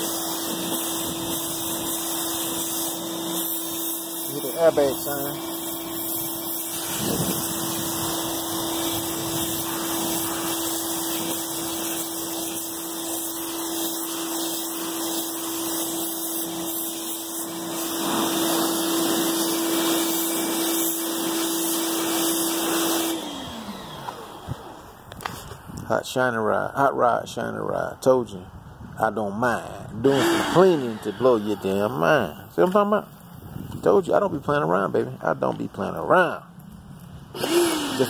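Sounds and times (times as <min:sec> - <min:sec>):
water spray hissing: 0:00.0 - 0:23.2, 0:30.0 - 0:32.5
pressure washer motor humming: 0:00.0 - 0:25.1, 0:30.0 - 0:32.9, 0:37.4 - 0:38.0
motor spinning down: 0:30.0 - 0:31.8, 0:37.4 - 0:38.0.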